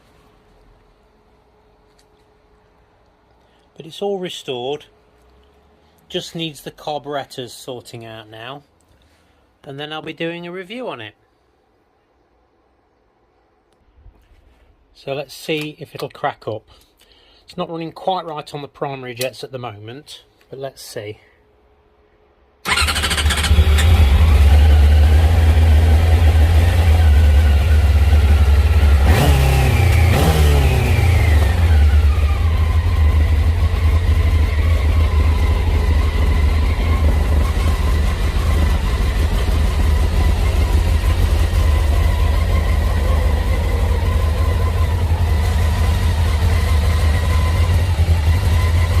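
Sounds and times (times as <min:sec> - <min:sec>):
motorcycle engine revving and idling: 0:22.7 - 0:49.0.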